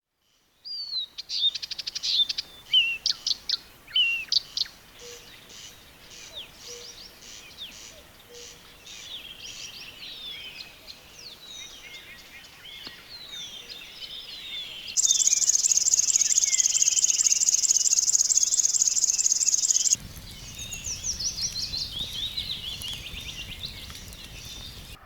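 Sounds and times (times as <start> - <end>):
birds chirping and whistling: 14.9 - 25.0
bird trilling and whistling: 15.0 - 25.0.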